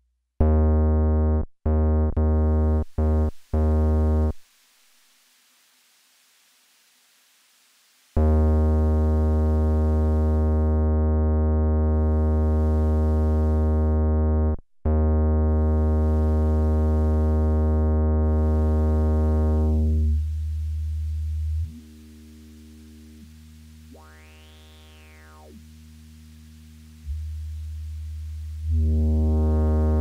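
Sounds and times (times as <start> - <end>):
low bass synth note: 8.2 - 23.2, 23.9 - 25.8, 27.1 - 30.0.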